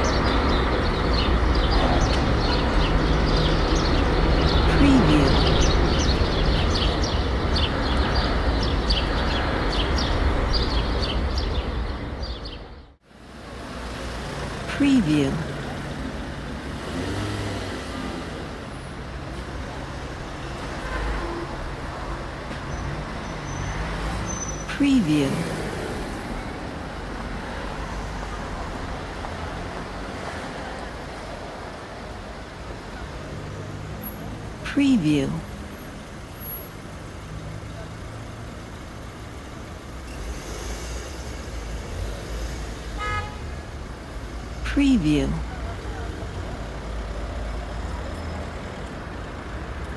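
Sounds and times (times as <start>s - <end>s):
small birds chirping: 0.0s - 13.0s
low traffic rumble: 0.0s - 49.9s.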